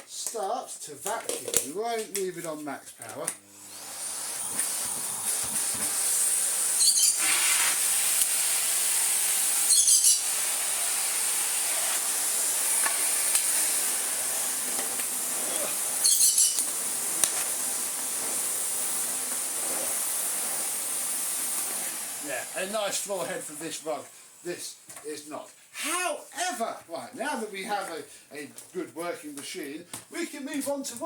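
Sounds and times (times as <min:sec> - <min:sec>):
vacuum cleaner running: 0:03.4 - 0:24.4.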